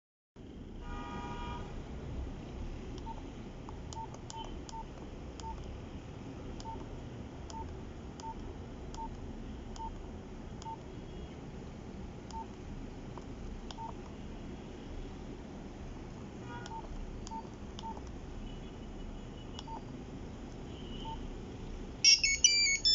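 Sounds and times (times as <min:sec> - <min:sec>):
phone keypad beeps: 0:04.0 - 0:05.6, 0:13.8 - 0:14.0, 0:19.6 - 0:19.8, 0:22.0 - 0:22.9
buzzy multi-tone beep: 0:22.0 - 0:22.9.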